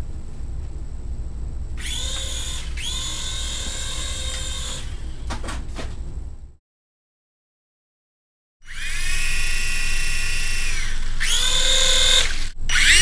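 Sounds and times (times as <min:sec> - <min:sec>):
small electric motors whining: 0:01.8 - 0:05.2, 0:08.6 - 0:13.0.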